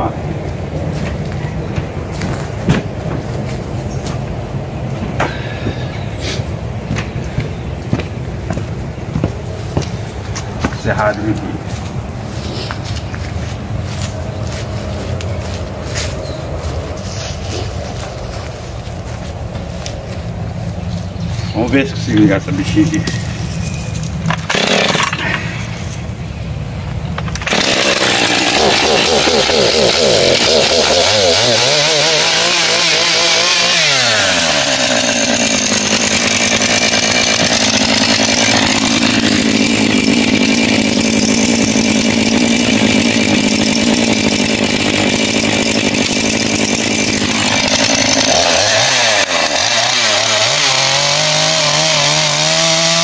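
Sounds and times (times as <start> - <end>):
chainsaw starting and revving: 24.3 - 26.0, 27.2 - 53.0.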